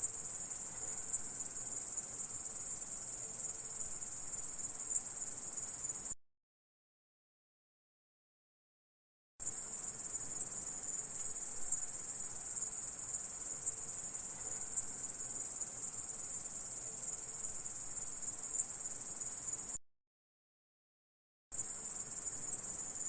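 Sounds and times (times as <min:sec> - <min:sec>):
insects chirring: 0:09.5 - 0:19.8, 0:21.6 - 0:23.0.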